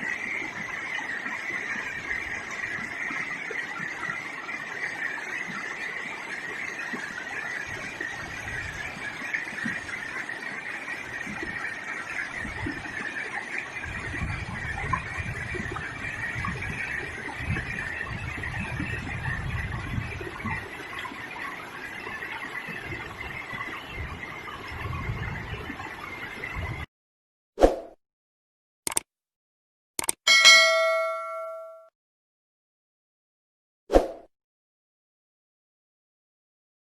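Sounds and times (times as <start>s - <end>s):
river water flowing: 0.0s - 18.1s, 30.3s - 31.7s
brief click: 28.9s - 29.1s, 30.0s - 30.2s.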